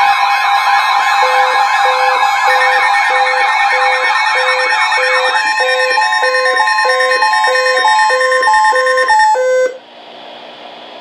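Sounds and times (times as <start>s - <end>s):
warbling siren: 0.0s - 9.8s
steady and alternating alert tones: 1.1s - 9.8s
repeating electronic beep: 1.2s - 9.8s.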